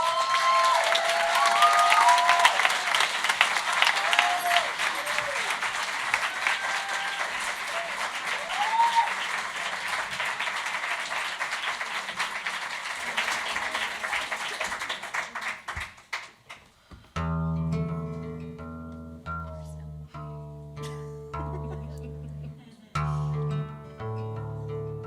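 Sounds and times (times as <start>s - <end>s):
audience applauding: 0.0s - 16.7s
guitar playing held chords: 17.2s - 25.0s
low bass notes: 17.2s - 25.0s.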